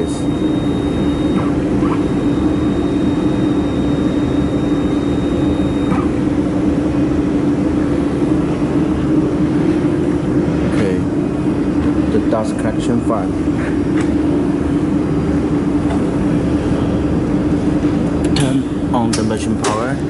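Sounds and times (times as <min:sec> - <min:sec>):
faint high whine: 0:00.0 - 0:13.4
welding machine humming drone: 0:00.0 - 0:20.0.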